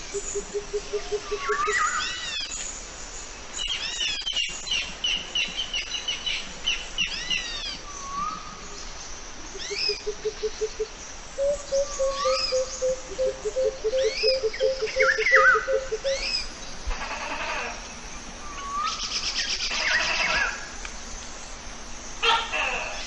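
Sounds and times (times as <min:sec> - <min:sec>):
low rapid pulsed bird call: 0:09.5 - 0:16.5
high arching bird chirps: 0:11.4 - 0:16.5.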